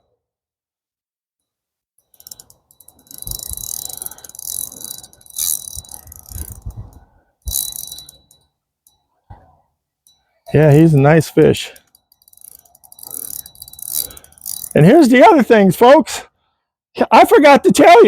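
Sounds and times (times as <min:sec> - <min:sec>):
fishing reel ratcheting: 0:02.1 - 0:08.4, 0:10.5 - 0:15.2.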